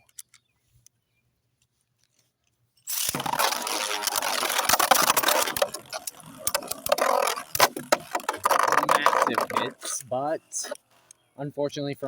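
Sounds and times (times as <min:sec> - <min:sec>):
spinning tops clattering: 0:02.9 - 0:10.0.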